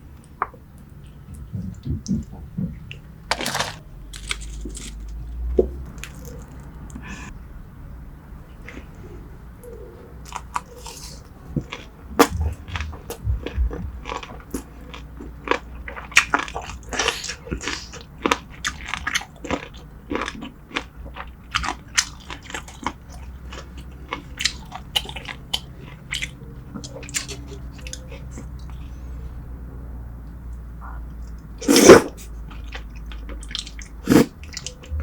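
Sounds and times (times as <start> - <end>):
low thumps: 1.2 - 3.3, 12.1 - 14.4, 34.8 - 35.0
person chewing and crunching: 2.9 - 7.0, 10.2 - 28.9, 31.6 - 35.0.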